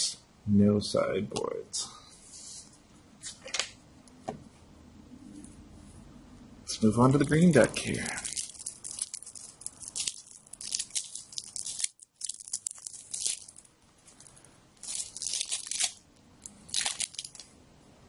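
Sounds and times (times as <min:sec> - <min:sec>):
packaging crinkling and tearing: 0:07.2 - 0:17.5.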